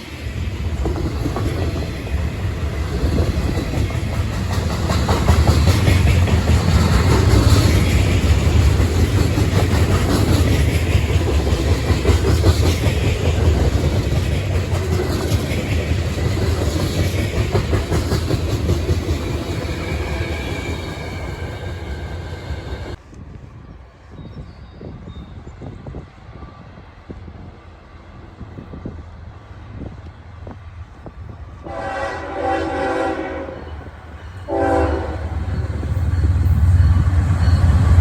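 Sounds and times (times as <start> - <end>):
freight train rumble: 0.0 - 38.0
wheels clicking over rail joints: 0.7 - 20.0.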